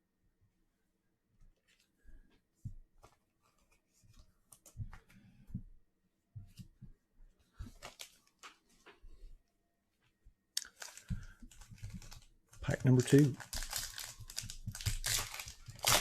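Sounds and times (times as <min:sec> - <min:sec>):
cards sliding into plastic sleeves: 0:10.6 - 0:12.2
foil wrapper crinkling: 0:10.6 - 0:16.0.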